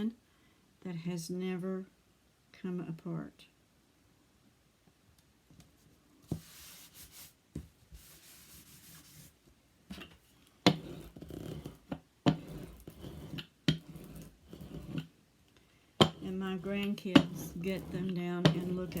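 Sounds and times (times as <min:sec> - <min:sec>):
paper rubbing and rustling: 0:06.3 - 0:09.4
sharp taps and knocks on table: 0:16.0 - 0:19.0.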